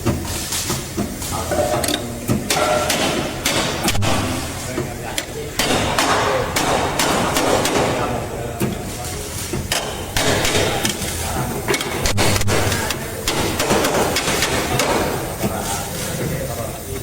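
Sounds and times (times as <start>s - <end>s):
hammer knocking on sheet metal: 2.4s - 8.3s, 9.6s - 11.1s, 11.7s - 15.4s.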